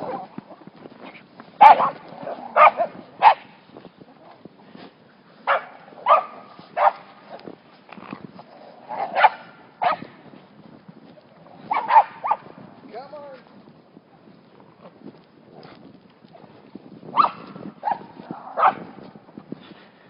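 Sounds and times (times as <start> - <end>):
dog barking: 1.6 - 3.4, 5.5 - 7.0, 9.0 - 10.0, 11.7 - 12.4, 17.1 - 18.8.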